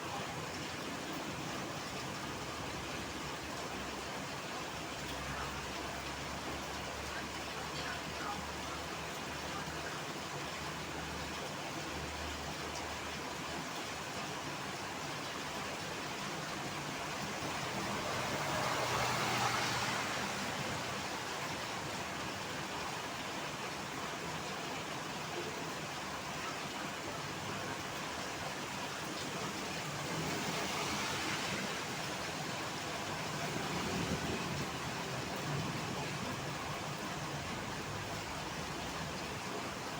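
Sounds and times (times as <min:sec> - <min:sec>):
heavy rain hiss: 0:00.0 - 0:39.9
road traffic: 0:00.0 - 0:39.9
tyres hissing on wet road: 0:00.0 - 0:39.9.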